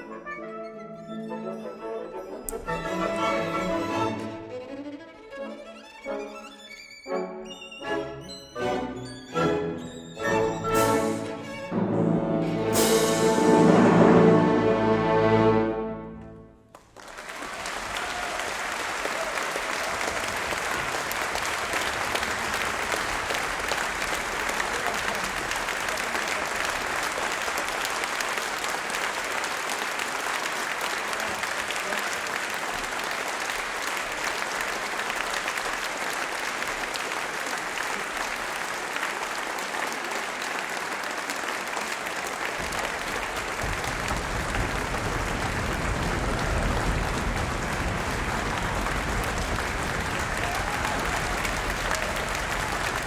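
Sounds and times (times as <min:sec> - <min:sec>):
audience applauding: 0:02.5 - 0:04.6, 0:16.2 - 0:53.0.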